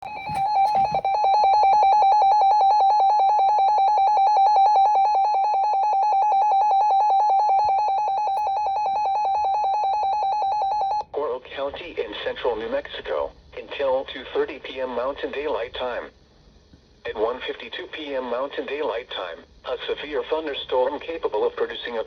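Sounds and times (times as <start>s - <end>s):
warbling electronic alarm tone: 0.1s - 11.0s.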